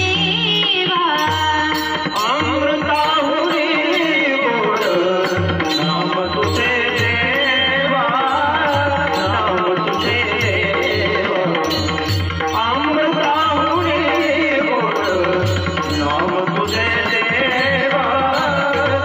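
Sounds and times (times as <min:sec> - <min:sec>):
woman singing: 0:00.0 - 0:07.6
tabla drum strokes: 0:00.0 - 0:19.0.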